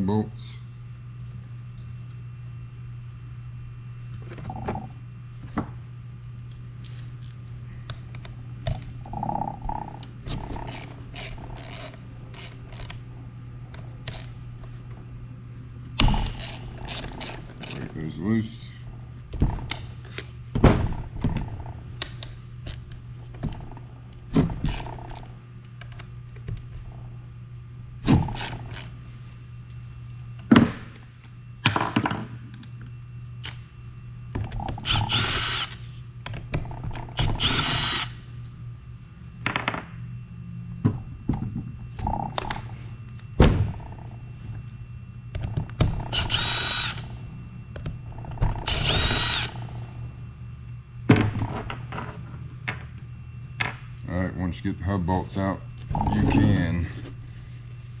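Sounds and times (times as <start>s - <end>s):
power driver whining: 34.3s - 38.6s, 41.0s - 50.8s.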